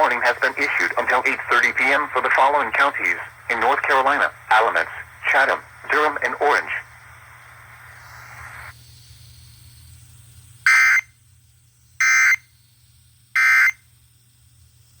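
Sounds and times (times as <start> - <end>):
faint radio hiss: 0.0 - 10.7
two-tone digital data bursts: 10.7 - 11.2, 12.0 - 12.5, 13.4 - 13.8.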